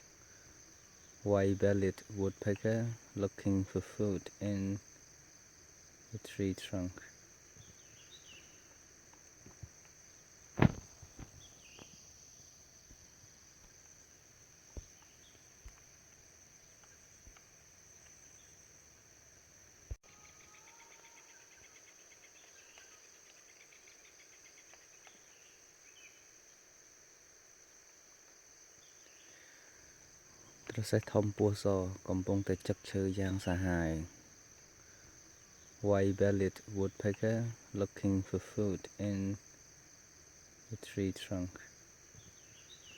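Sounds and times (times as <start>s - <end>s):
insect drone: 0.0s - 42.9s
faint bird chirps: 7.0s - 8.8s, 20.0s - 26.3s.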